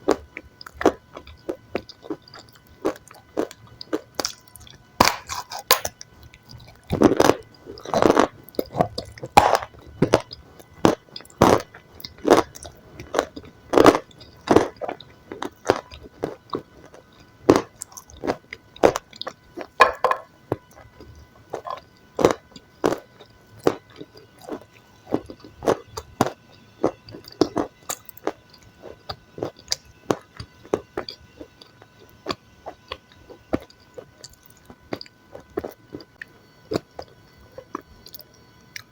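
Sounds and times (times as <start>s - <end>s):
crunchy chewing and biting: 0.0s - 38.9s.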